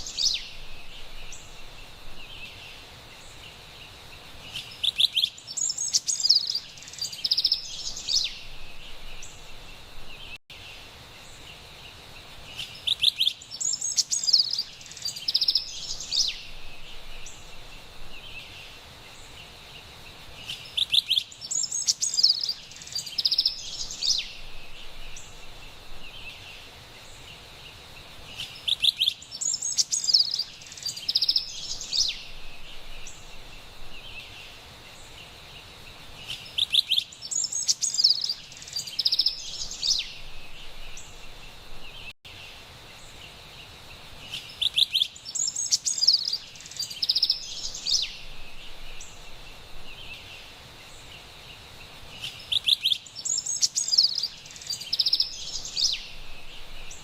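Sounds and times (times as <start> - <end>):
faint background hiss: 0.0 - 57.0
wren singing ringing notes: 20.7 - 24.5, 44.7 - 48.3.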